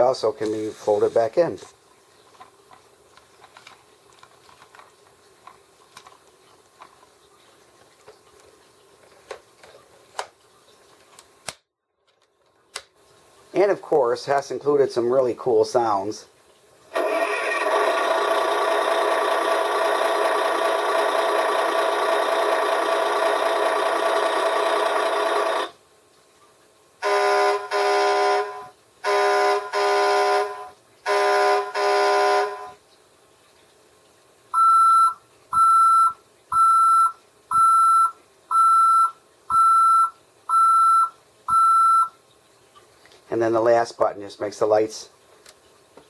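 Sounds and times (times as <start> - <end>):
toy truck engine sound: 17.0 - 25.7
short horn honks: 27.0 - 32.8
back-up beeper: 34.6 - 42.2.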